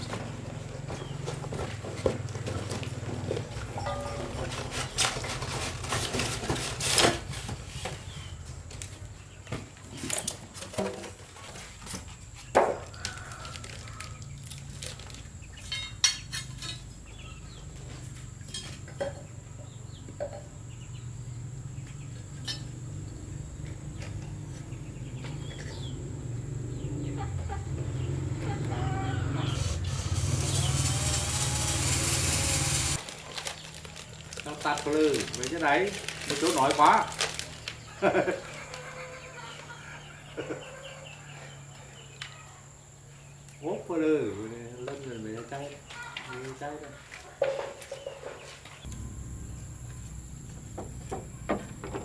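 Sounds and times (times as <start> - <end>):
chickens clucking: 24.2 - 30.7, 37.7 - 42.5
low engine hum: 48.9 - 52.0.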